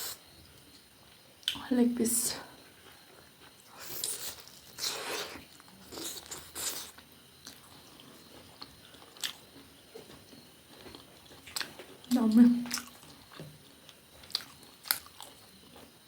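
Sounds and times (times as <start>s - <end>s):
quiet chewing: 2.7s - 16.0s
crunchy bites: 12.7s - 15.6s.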